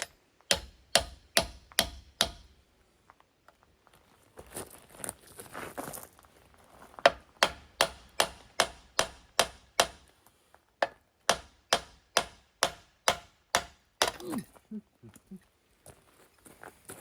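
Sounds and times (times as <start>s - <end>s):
hammer striking metal: 0.0s - 2.5s, 7.1s - 10.0s, 10.8s - 14.2s.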